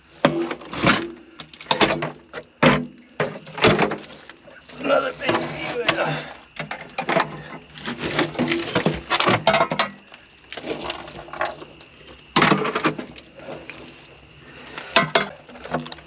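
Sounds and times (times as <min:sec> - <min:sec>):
metal scrap clinking and clattering: 0:06.6 - 0:10.0.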